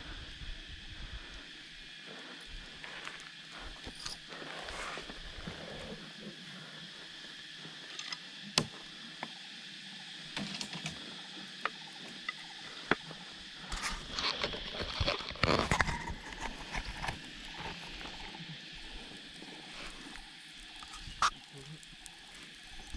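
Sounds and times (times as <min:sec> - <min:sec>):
faint insect drone: 0:00.0 - 0:22.9
crackling and rustling: 0:13.6 - 0:22.9.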